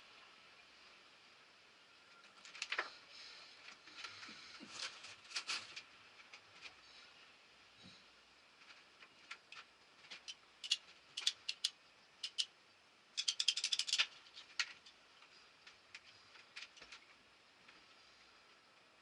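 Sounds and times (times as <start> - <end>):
ratchet clicking: 10.2 - 12.5, 13.2 - 14.8
hand tool clicks: 10.6 - 12.5, 13.2 - 14.1.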